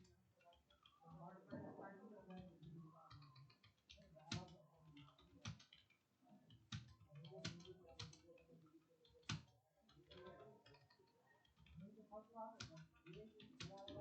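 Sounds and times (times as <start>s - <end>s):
keyboard typing clicks: 12.6s - 14.0s.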